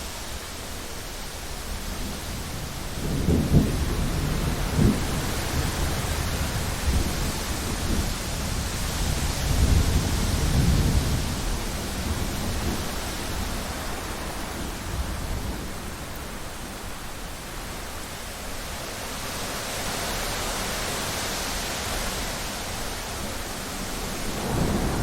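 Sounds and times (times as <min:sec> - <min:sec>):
rain hiss: 0:00.0 - 0:25.0
thunder rolling: 0:02.5 - 0:15.7, 0:24.2 - 0:25.0.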